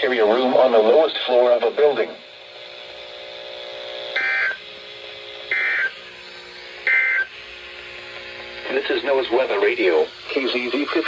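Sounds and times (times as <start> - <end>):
faint steady hum: 0.0 - 11.0
harsh digital buzzes: 0.0 - 11.0.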